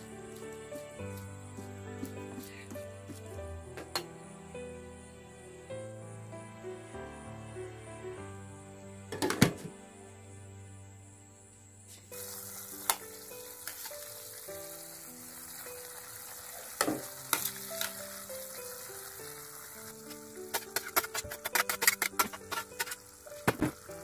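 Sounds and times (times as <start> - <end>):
food sizzling in a pan: 12.0 - 24.0
clattering stirring: 20.1 - 23.8.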